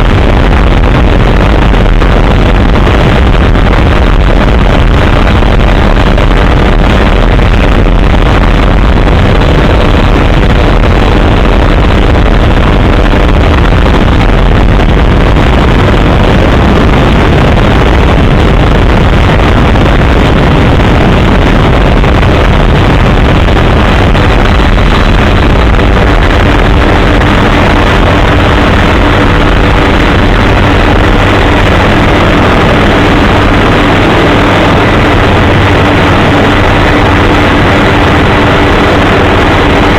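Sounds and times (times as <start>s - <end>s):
helicopter engine and rotor: 26.0s - 39.9s.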